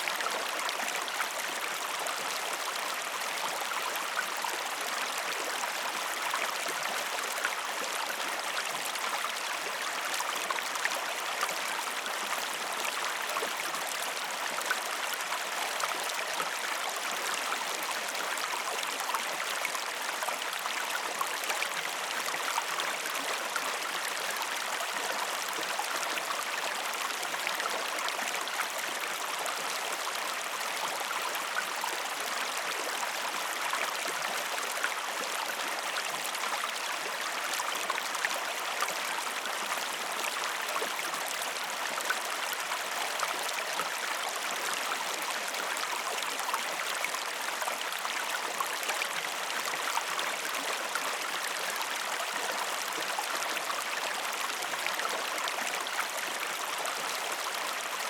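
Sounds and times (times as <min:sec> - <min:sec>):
stream water babbling: 0:00.0 - 0:58.0.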